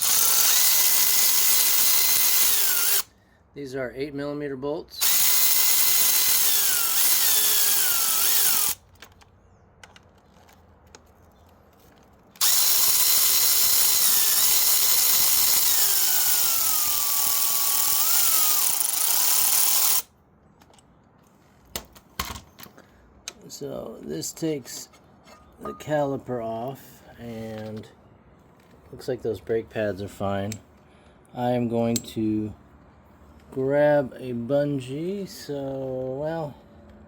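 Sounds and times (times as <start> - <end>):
cordless power tool motor whine: 0.0 - 3.1, 5.0 - 8.8, 12.4 - 20.1.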